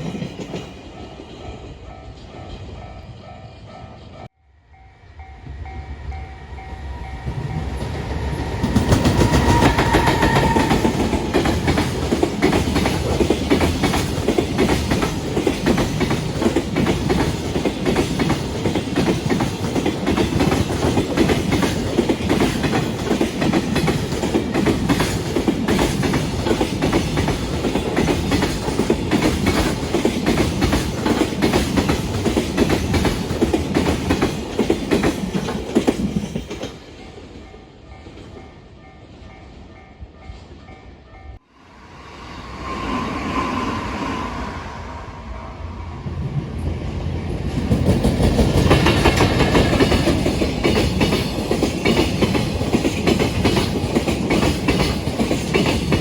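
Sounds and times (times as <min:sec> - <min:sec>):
freight train wheels clacking: 0:07.2 - 0:38.4, 0:47.1 - 0:56.0.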